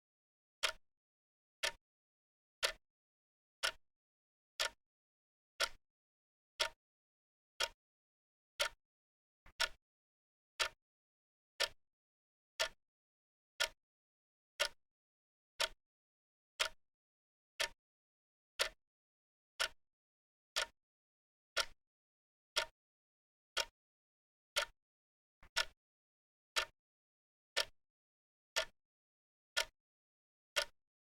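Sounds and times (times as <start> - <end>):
clock ticking: 3.6 - 3.8, 20.6 - 20.8, 21.6 - 21.8, 25.5 - 25.8.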